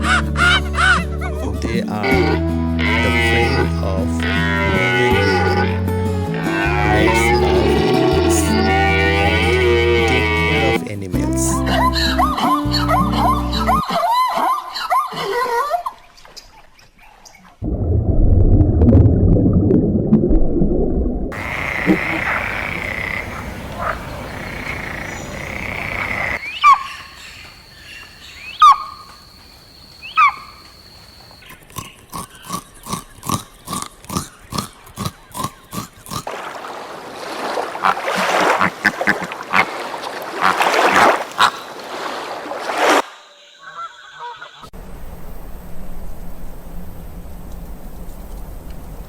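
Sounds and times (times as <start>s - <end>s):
harsh rasping animal calls: 0.0s - 10.8s, 21.4s - 36.3s
high-pitched animal call: 2.0s - 10.8s, 21.4s - 29.2s, 30.0s - 30.7s
low animal rumble: 21.3s - 26.4s
quick pulsed animal calls: 21.4s - 31.4s.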